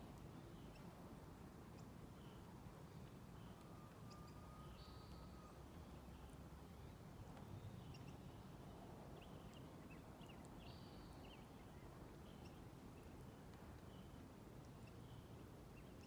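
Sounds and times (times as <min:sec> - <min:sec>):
small birds chirping: 0:00.0 - 0:01.0, 0:01.6 - 0:16.0.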